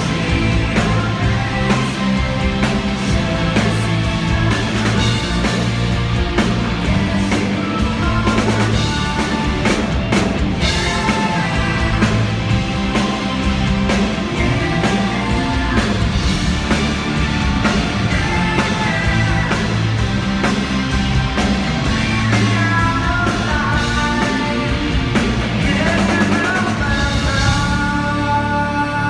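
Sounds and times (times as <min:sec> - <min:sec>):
rock music with drums and guitar: 0:00.0 - 0:29.0
person singing: 0:21.9 - 0:29.0.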